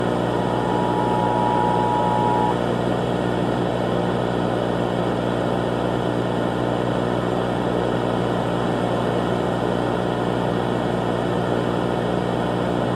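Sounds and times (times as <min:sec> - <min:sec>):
held tone: 0:00.0 - 0:02.6
noisy drone: 0:00.0 - 0:02.6
even hum: 0:00.0 - 0:02.7.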